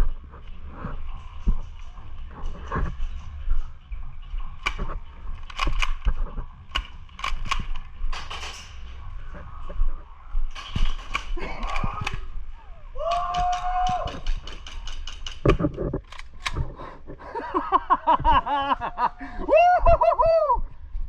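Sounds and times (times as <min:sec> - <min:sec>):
players yelling: 0:13.0 - 0:14.4.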